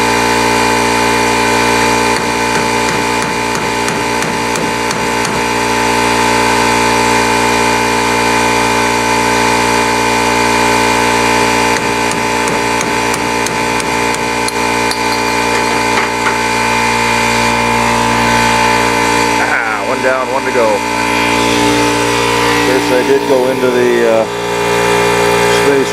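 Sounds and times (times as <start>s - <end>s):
air die grinder cutting metal: 1.3s - 6.2s.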